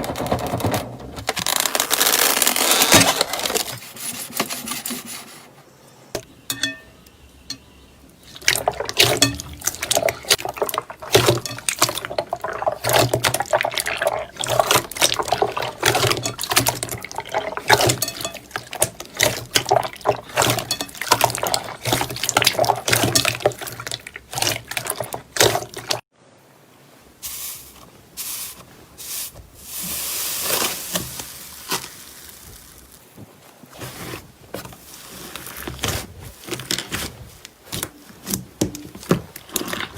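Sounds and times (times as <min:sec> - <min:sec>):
slime squishing: 0:08.3 - 0:26.0, 0:33.8 - 0:39.9.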